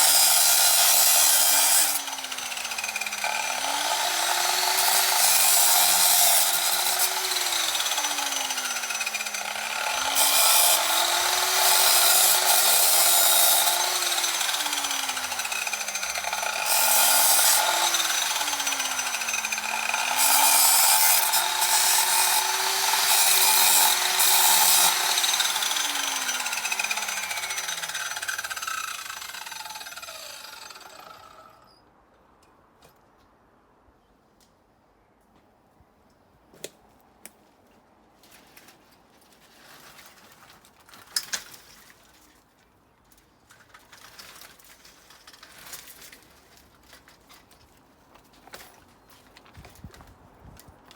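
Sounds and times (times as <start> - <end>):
angle grinder cutting metal: 0.0 - 31.6
grinder spinning down: 1.7 - 31.6.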